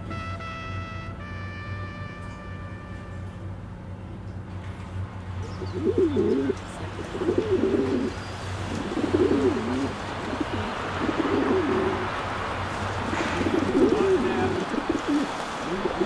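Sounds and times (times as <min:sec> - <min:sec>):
pigeons cooing: 0:05.4 - 0:16.0.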